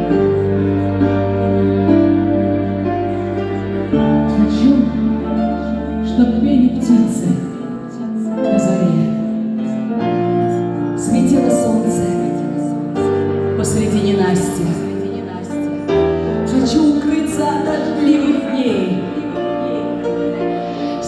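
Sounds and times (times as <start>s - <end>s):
woman singing: 3.2s - 9.4s, 10.5s - 12.8s, 13.5s - 21.0s.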